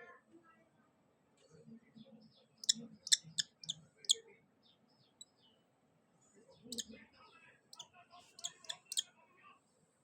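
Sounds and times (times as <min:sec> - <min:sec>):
chicks calling high-pitched: 0:02.6 - 0:04.2, 0:08.4 - 0:09.0.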